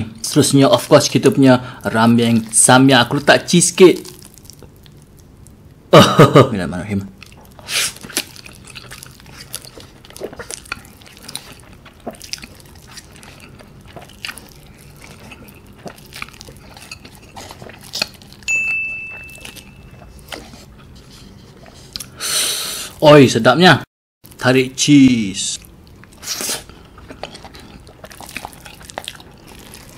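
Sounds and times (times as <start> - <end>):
mouth clicks and chewing: 7.2 - 22.2, 25.6 - 29.9
brief high steady tone: 18.5 - 20.0.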